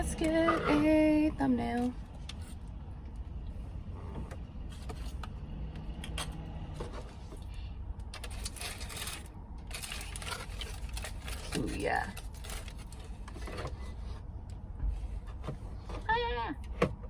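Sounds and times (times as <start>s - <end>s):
clicks and rustles of handling: 4.3s - 16.1s.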